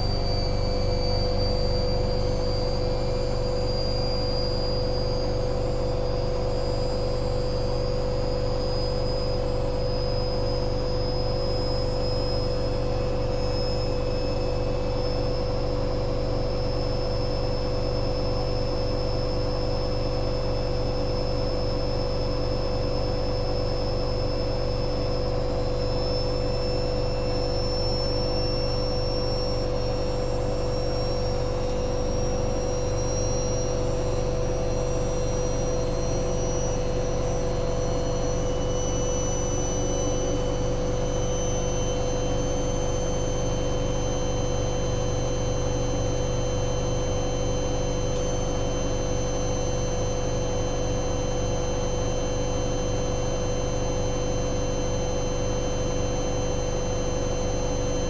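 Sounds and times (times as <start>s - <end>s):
high whine: 0.0s - 15.6s, 23.5s - 58.0s
washing machine spinning: 0.0s - 15.6s, 21.7s - 52.5s.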